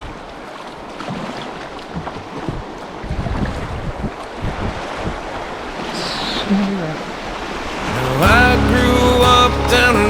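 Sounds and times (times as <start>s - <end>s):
rushing river water: 0.0s - 10.0s
wind buffeting microphone: 2.0s - 6.5s.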